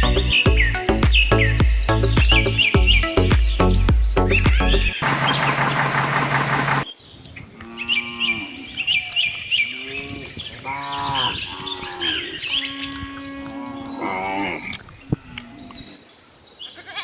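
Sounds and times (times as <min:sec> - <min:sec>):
birds chirping: 0:00.0 - 0:17.0
cattle mooing: 0:07.6 - 0:08.9, 0:09.7 - 0:16.0.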